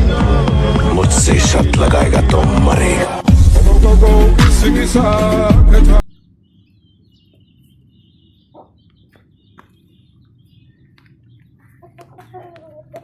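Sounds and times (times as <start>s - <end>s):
small birds chirping: 6.1s - 13.0s.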